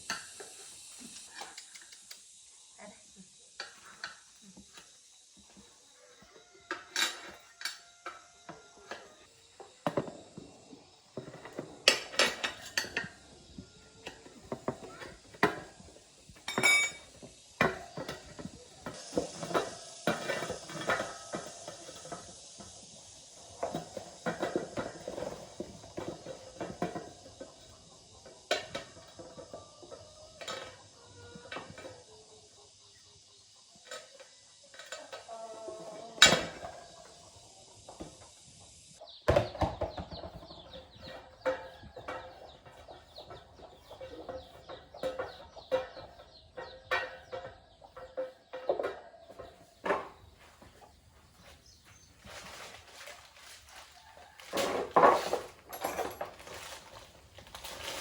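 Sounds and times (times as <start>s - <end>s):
metal tools clinking and knocking: 6.7s - 8.2s, 11.2s - 13.2s, 16.3s - 22.7s, 44.0s - 50.1s, 54.2s - 58.0s.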